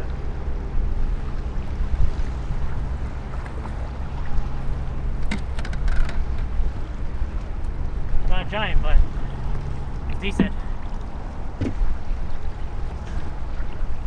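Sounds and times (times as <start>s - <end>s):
water slapping against boat: 0.0s - 14.0s
wind rumbling on microphone: 0.0s - 14.0s
sharp clicks or splashes: 5.2s - 6.5s.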